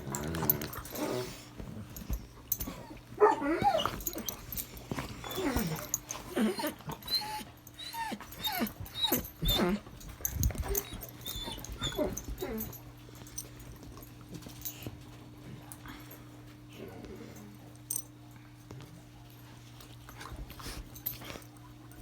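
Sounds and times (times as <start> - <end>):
dog whining and yelping: 2.0 - 12.8.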